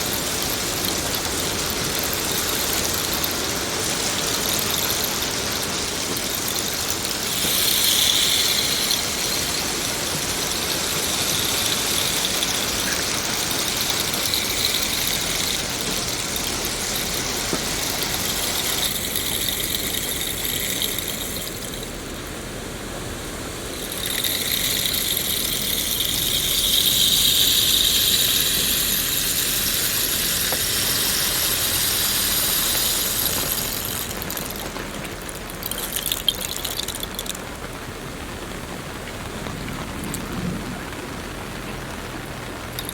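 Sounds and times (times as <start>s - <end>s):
steady falling rain: 0.0s - 42.9s.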